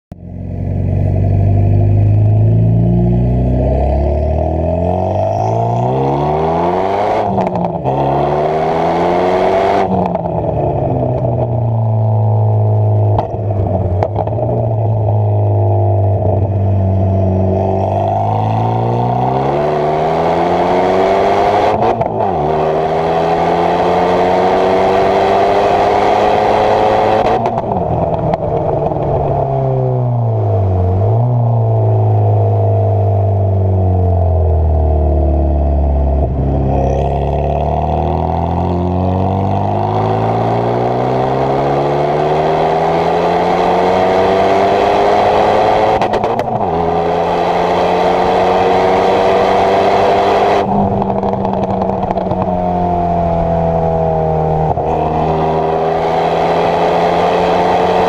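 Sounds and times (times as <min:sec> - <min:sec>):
car engine accelerating: 0:00.1 - 0:58.0
exhaust pops and crackles: 0:13.1 - 0:15.0, 0:27.3 - 0:29.6, 0:50.7 - 0:52.8.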